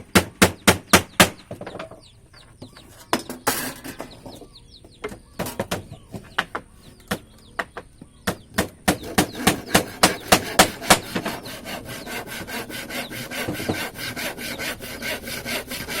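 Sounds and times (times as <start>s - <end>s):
hand saw cutting wood: 8.8s - 16.0s.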